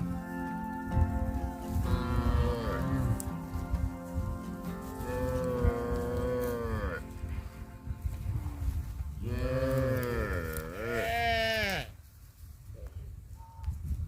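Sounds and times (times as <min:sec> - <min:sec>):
cow mooing: 0:01.8 - 0:03.3, 0:05.0 - 0:07.1, 0:09.2 - 0:11.8.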